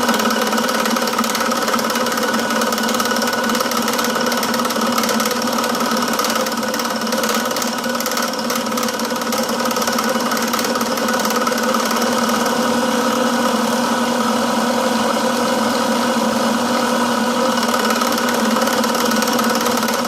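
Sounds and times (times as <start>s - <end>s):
milling machine running: 0.0s - 20.0s.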